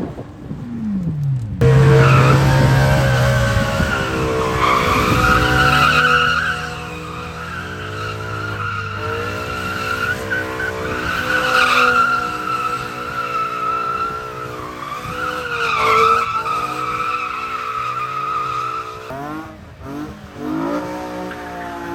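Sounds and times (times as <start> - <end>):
sports car engine revving high: 0.4 - 17.2
tyres squealing: 1.6 - 19.1.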